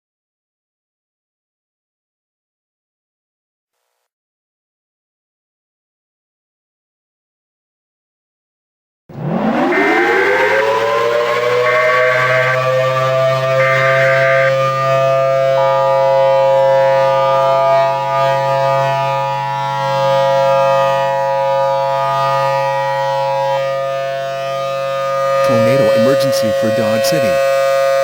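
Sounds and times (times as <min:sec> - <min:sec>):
warning siren wail: 0:09.1 - 0:28.0
alert data burst: 0:09.2 - 0:14.6
two-tone attention signal: 0:09.2 - 0:14.7.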